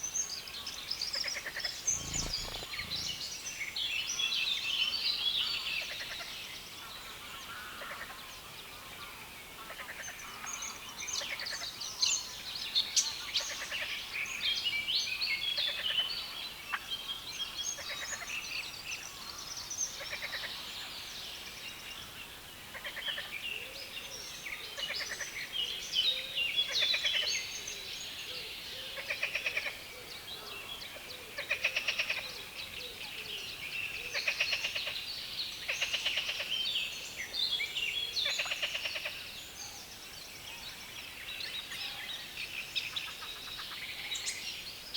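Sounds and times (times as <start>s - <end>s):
birds singing: 1.7s - 3.6s.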